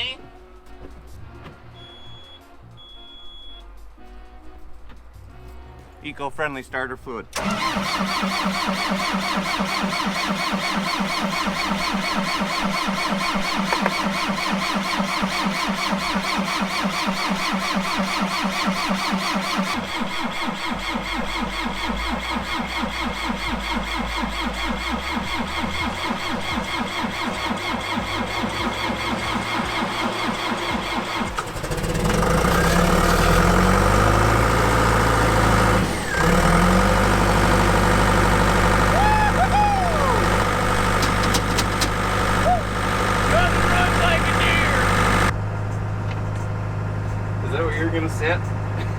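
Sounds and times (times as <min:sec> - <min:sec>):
diesel engine cranking on starter: 0:07.3 - 0:46.4
diesel engine running: 0:07.3 - 0:48.9.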